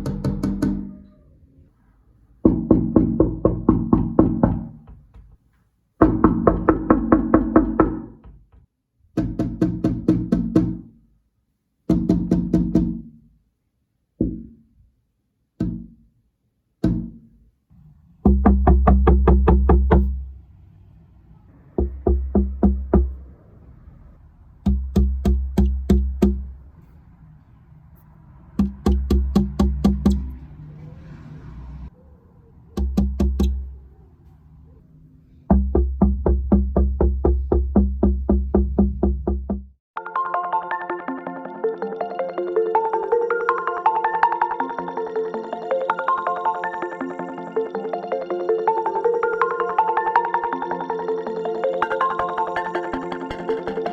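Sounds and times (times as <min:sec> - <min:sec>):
knocking on glass window: 0:00.0 - 0:00.9, 0:02.5 - 0:05.4, 0:06.0 - 0:08.6, 0:09.2 - 0:11.0, 0:11.9 - 0:13.2, 0:14.2 - 0:14.6, 0:15.6 - 0:16.0, 0:16.8 - 0:17.3, 0:18.3 - 0:20.2, 0:21.8 - 0:23.2, 0:24.7 - 0:26.6, 0:28.6 - 0:30.4, 0:32.8 - 0:33.7, 0:35.5 - 0:39.8.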